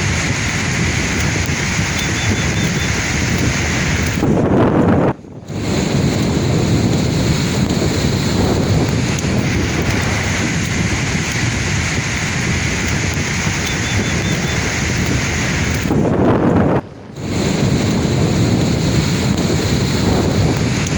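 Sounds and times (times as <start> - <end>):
sea waves breaking on shore: 0.0 - 20.9
wind buffeting microphone: 0.0 - 20.9.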